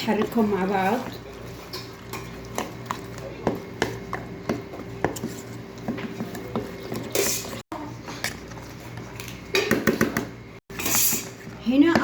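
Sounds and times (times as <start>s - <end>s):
spoon stirring thick mixture: 0.0s - 9.4s.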